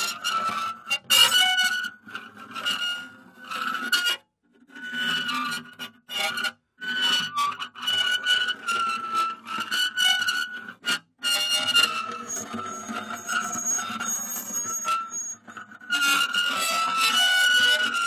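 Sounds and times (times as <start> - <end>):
steel rubbing on steel squealing: 11.4 - 18.0.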